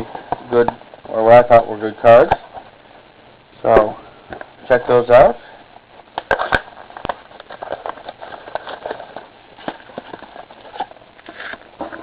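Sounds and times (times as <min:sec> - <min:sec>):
cardboard and wrapper crackles: 0:06.2 - 0:11.7.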